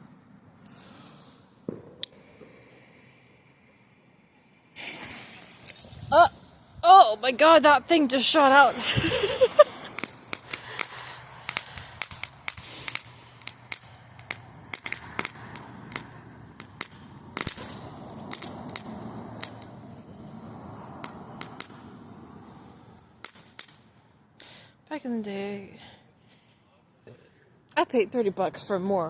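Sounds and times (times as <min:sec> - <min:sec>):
faint hiss: 0:00.6 - 0:16.3
loud firework crack: 0:00.7 - 0:03.2, 0:04.8 - 0:06.8, 0:08.3 - 0:24.2
fireworks popping and crackling: 0:01.6 - 0:02.5, 0:04.8 - 0:24.1.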